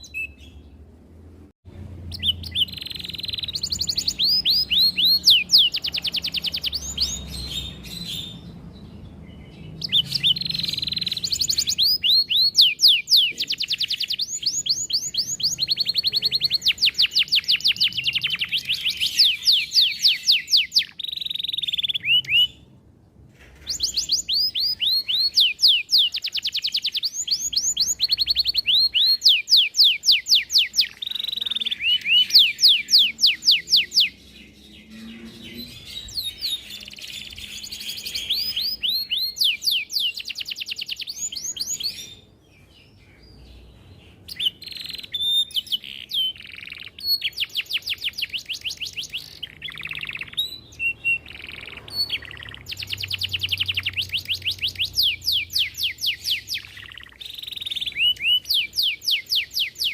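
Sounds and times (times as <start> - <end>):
canary singing trills: 0.0 - 0.9, 1.8 - 59.9.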